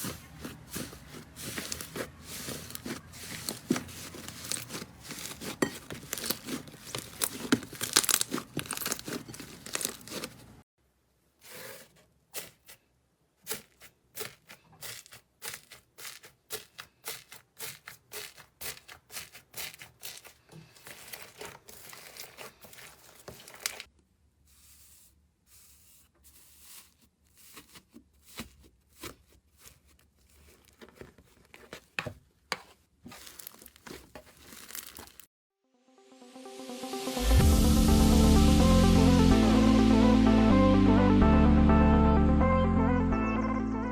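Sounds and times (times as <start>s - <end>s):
slime crackling and popping: 0.7s - 10.5s, 33.1s - 35.3s.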